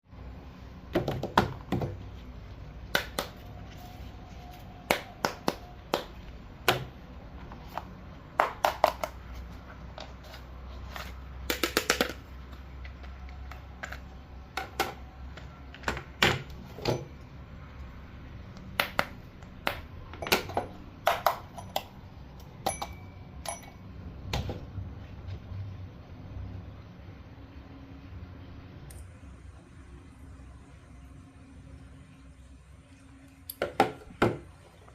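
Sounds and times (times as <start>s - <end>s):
hard objects clicking and tapping: 4.9s - 7.0s, 7.7s - 9.2s, 11.4s - 17.2s, 18.6s - 23.8s.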